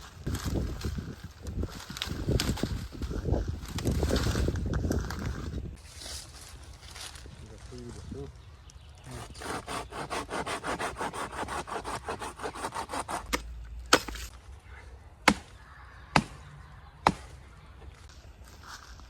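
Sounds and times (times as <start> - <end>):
hand saw cutting log: 9.1 - 13.4.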